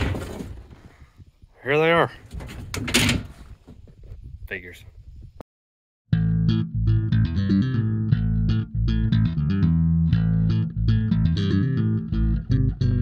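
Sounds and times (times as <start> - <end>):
bass and electric guitar riff: 6.1 - 13.0.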